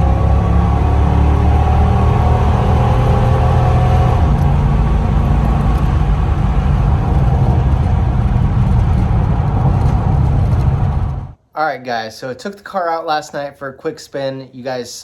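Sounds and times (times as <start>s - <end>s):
car engine running: 0.0s - 11.4s.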